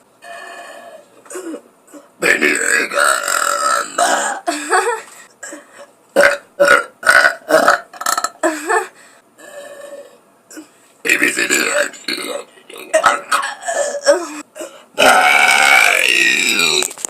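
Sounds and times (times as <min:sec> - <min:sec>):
girl burping loudly: 0:02.2 - 0:04.8, 0:06.2 - 0:08.8, 0:09.4 - 0:16.9.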